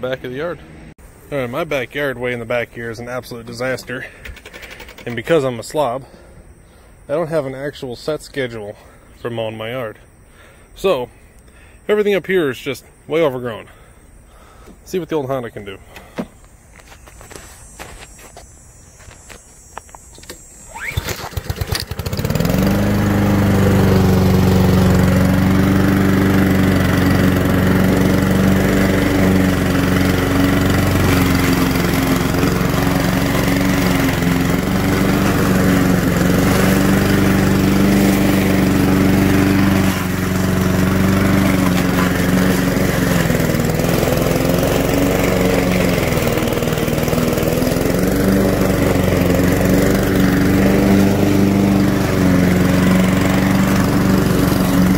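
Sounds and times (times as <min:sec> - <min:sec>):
lawnmower engine running: 0:00.0 - 0:07.8, 0:20.2 - 0:54.9.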